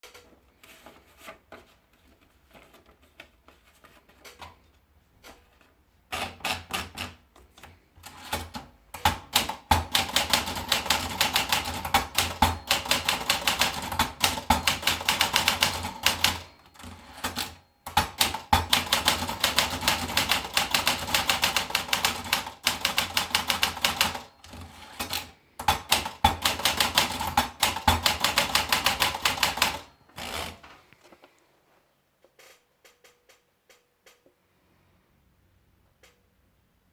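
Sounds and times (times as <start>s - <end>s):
manual typewriter typing: 6.1s - 30.7s.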